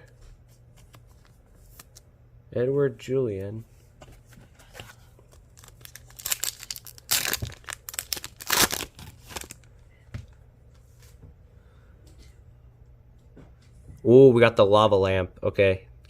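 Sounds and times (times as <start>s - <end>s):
foil wrapper crinkling and tearing: 5.3s - 9.7s.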